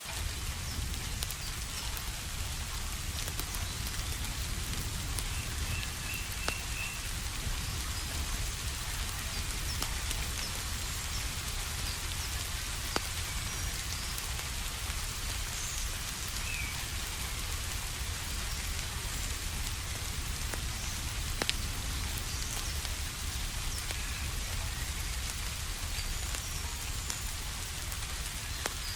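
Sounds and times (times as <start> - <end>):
rain patter: 0.0 - 28.9.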